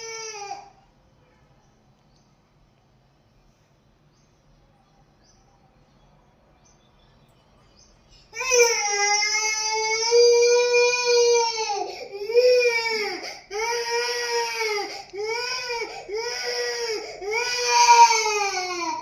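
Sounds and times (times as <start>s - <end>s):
baby crying: 8.4s - 19.0s.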